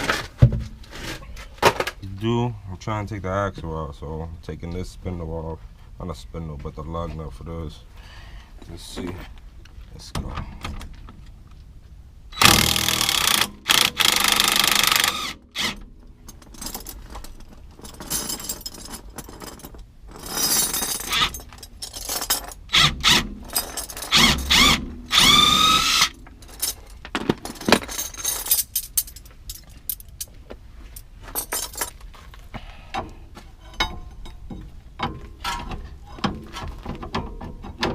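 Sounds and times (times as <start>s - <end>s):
power tool bursts with rising whine: 24.1s - 26.1s.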